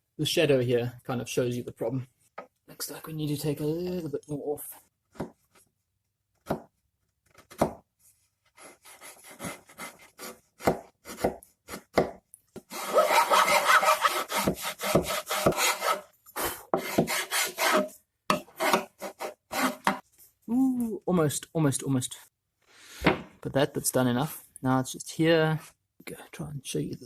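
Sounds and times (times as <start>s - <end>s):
hand file scraping wood panel: 8.5s - 12.0s, 12.6s - 20.0s.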